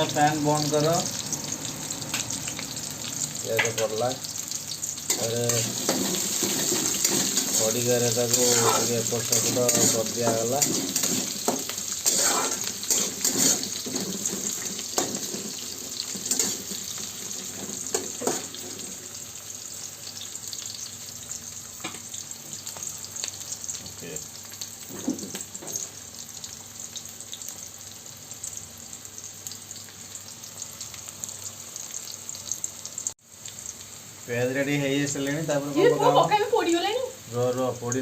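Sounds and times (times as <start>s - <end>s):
onions sizzling in oil: 0.0s - 38.0s
spoon scraping a pan: 5.1s - 18.9s.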